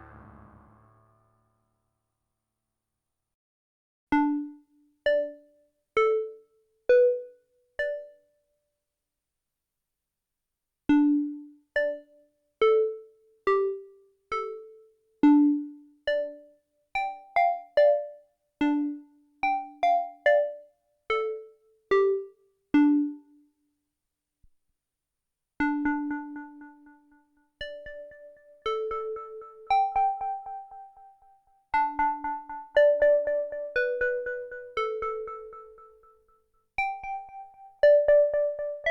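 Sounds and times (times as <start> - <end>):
synthesizer plucked bell-like notes: 0.0 - 0.9.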